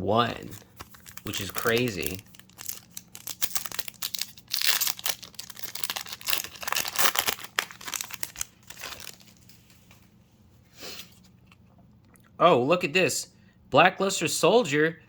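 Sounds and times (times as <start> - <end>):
foil wrappers crinkling and tearing: 0.3 - 10.0.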